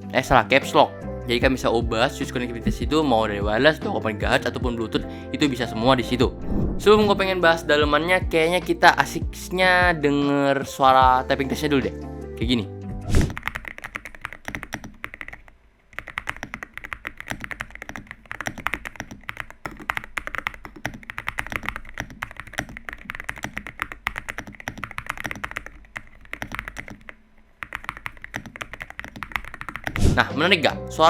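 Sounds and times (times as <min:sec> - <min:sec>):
mechanical keyboard typing: 0:13.1 - 0:30.1.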